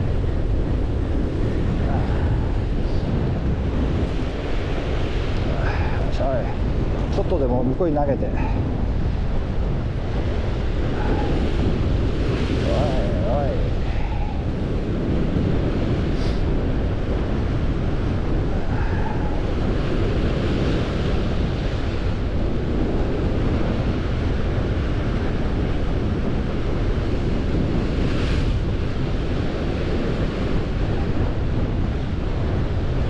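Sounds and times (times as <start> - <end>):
wind buffeting microphone: 0.0 - 33.0
hiss of wash: 16.1 - 16.5.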